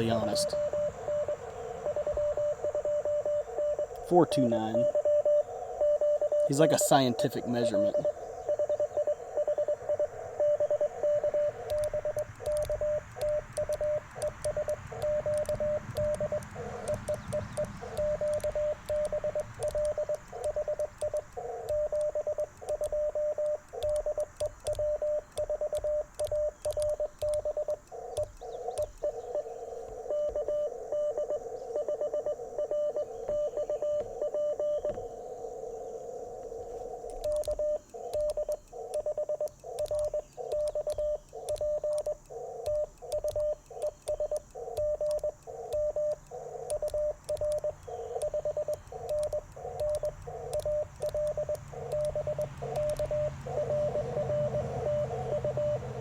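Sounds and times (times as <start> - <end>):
morse code tone: 0.0 - 35.2, 36.9 - 56.0
receiver hiss: 0.0 - 56.0.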